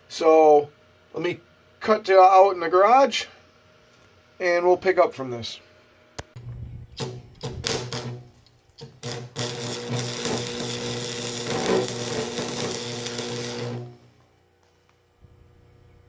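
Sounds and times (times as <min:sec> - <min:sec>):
welding rod sputtering: 0:07.0 - 0:14.1
stick welder arc crackling: 0:07.0 - 0:15.1.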